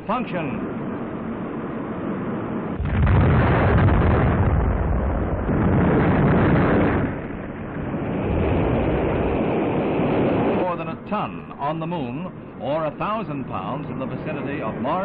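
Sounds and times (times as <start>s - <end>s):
explosion blast with rumble: 2.7s - 10.9s.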